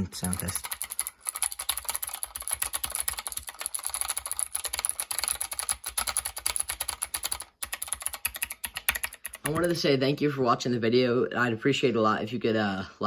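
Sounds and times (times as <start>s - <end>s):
mechanical keyboard typing: 0.0s - 9.9s.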